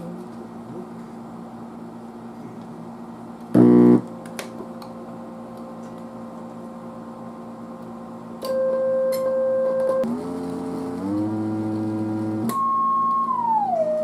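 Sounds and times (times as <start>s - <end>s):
amplifier hum: 3.5s - 4.2s, 10.9s - 14.0s
loud brief buzz: 3.6s - 4.0s.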